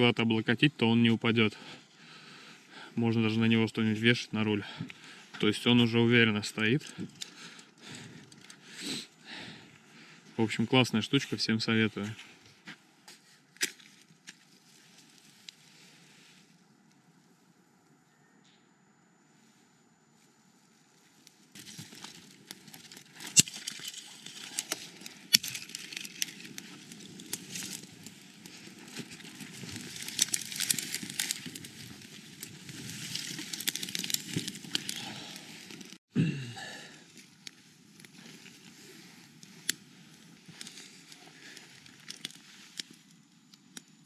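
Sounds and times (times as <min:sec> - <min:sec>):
campfire crackling and popping: 0:21.2 - 0:36.0, 0:37.0 - 0:44.0.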